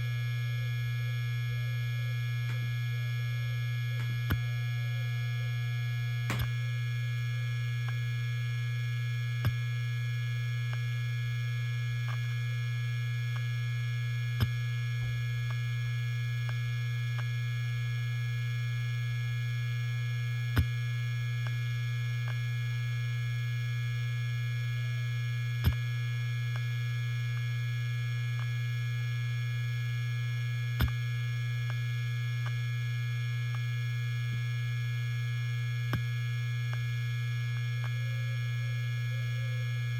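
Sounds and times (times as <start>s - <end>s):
hard disk spinning hum: 0.0s - 19.4s, 20.0s - 39.9s
faint ticks: 30.8s - 31.0s, 35.9s - 36.9s.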